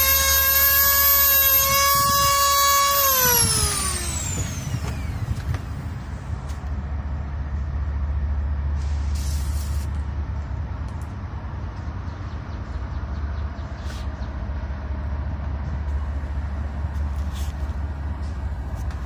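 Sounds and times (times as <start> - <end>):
rotary tool humming: 0.0 - 6.1
brief hiss: 8.8 - 10.0.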